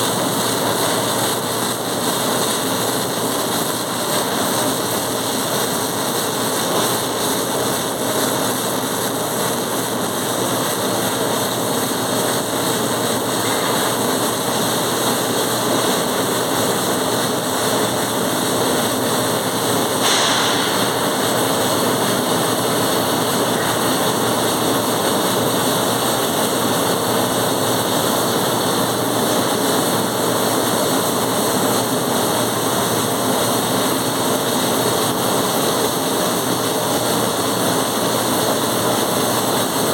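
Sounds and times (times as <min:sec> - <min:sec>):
welding hiss: 0:00.0 - 0:39.9
brief sharp sound: 0:20.0 - 0:21.1.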